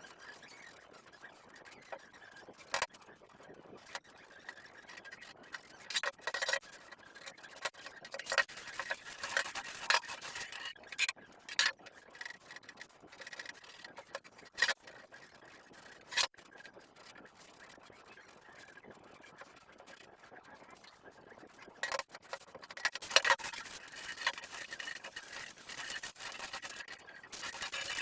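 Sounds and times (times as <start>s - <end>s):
dishes rubbing and scraping: 7.2s - 11.7s, 21.8s - 28.0s.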